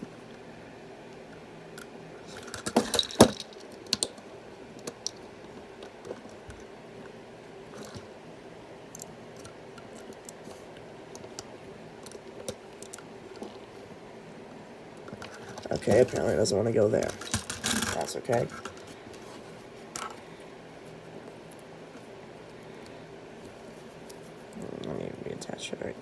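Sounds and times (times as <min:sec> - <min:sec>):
plastic bricks clicking and rattling: 0:15.2 - 0:18.8.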